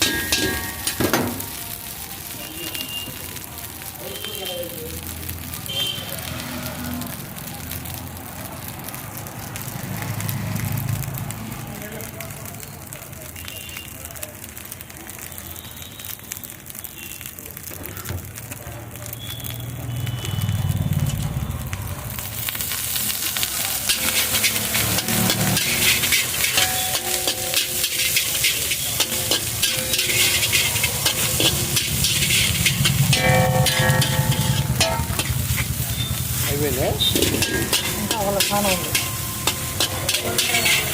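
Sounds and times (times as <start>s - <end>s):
metal ladle scraping and clattering: 0.0s - 1.2s, 23.8s - 40.9s
food sizzling in a wok: 0.0s - 40.9s.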